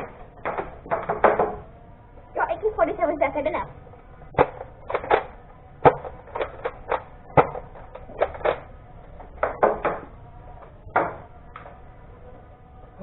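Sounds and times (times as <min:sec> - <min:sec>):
sharp clicks and knocks: 0:00.0 - 0:01.8, 0:04.3 - 0:11.8.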